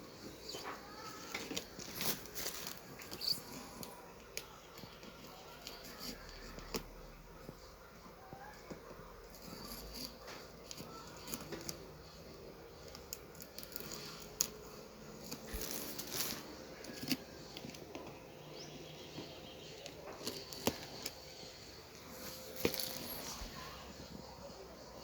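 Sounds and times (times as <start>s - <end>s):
packaging rustling and tearing: 0.6s - 7.0s, 9.3s - 18.0s, 19.7s - 24.1s
packaging clicks and taps: 19.1s - 21.2s, 22.0s - 23.4s.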